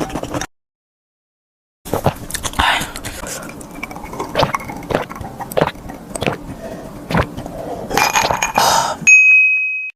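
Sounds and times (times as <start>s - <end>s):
person chewing: 1.9s - 8.8s.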